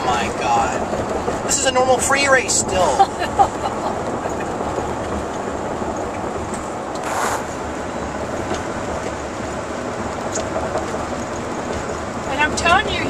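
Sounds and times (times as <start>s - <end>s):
road and engine noise inside car: 0.0s - 13.0s
short loud hiss: 7.0s - 7.6s.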